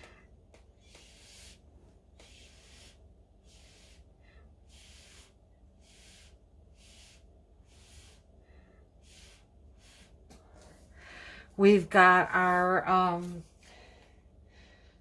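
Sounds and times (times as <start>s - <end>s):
faint breathing: 2.5s - 11.6s, 13.5s - 15.0s.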